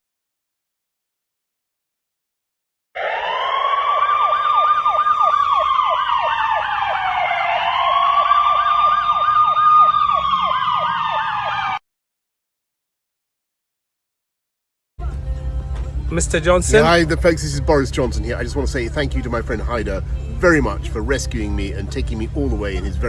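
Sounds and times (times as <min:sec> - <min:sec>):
siren wailing: 0:03.0 - 0:11.8
siren yelping tone: 0:03.0 - 0:11.8.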